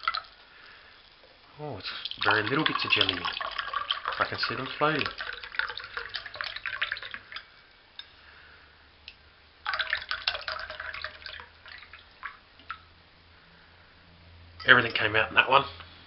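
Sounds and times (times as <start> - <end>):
liquid pouring into a glass: 0.0 - 0.4, 1.0 - 7.6, 9.6 - 12.9
liquid dripping: 0.0 - 8.2, 9.1 - 13.0.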